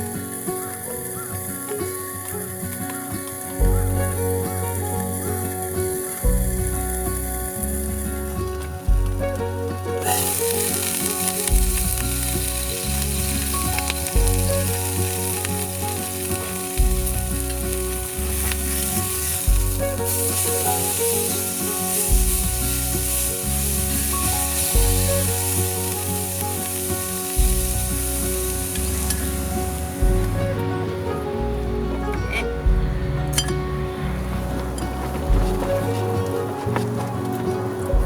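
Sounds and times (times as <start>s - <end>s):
background music with bass line: 0.0s - 38.0s
food sizzling in a hot pan: 10.0s - 30.0s.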